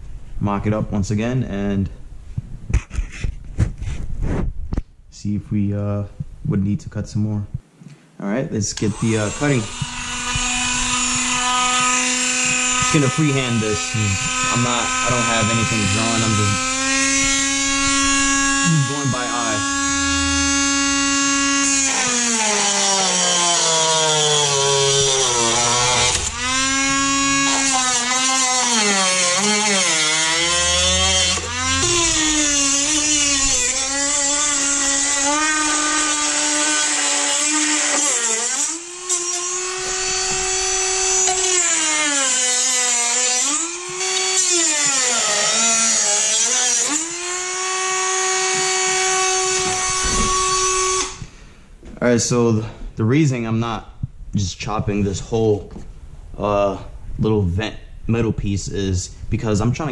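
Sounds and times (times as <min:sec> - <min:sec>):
electric cutting tool whining: 0:08.8 - 0:51.3.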